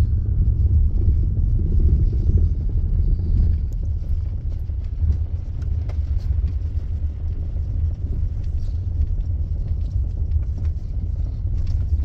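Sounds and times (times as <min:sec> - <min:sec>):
car road rumble: 0:00.0 - 0:12.0.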